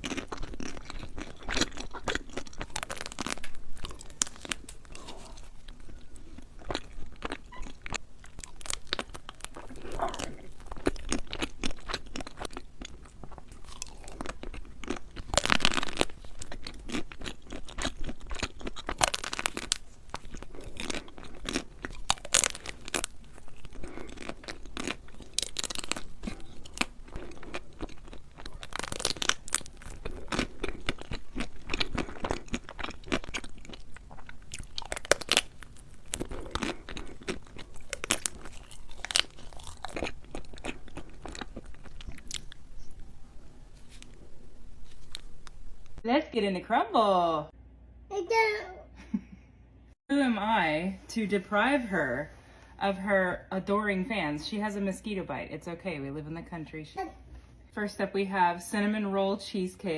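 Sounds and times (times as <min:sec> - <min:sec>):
crunching and chewing crisp food: 0:00.0 - 0:46.0.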